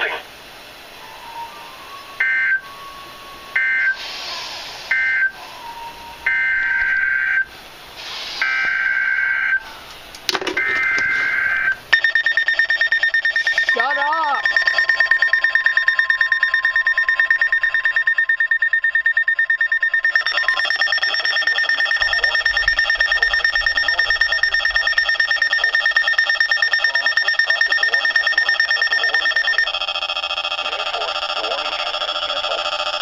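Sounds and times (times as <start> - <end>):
pulsing electronic alert tone: 10.6 - 32.6
steady electronic tone: 11.2 - 32.3.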